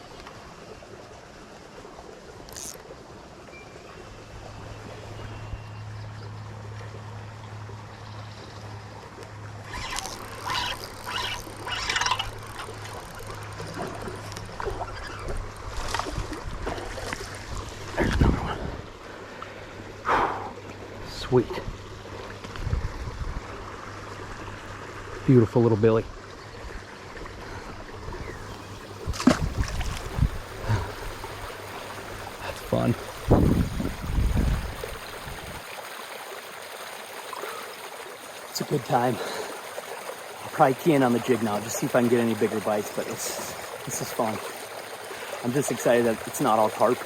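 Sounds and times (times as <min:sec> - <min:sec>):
water splashing: 0:09.1 - 0:21.4, 0:27.4 - 0:47.0
water running through spillway: 0:26.9 - 0:47.0.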